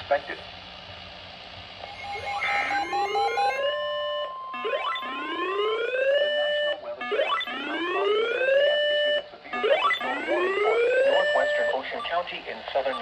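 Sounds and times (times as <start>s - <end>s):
short pulsed beeps: 1.8s - 3.6s
steady tone: 1.8s - 3.7s
whooping alarm tone: 1.8s - 3.9s.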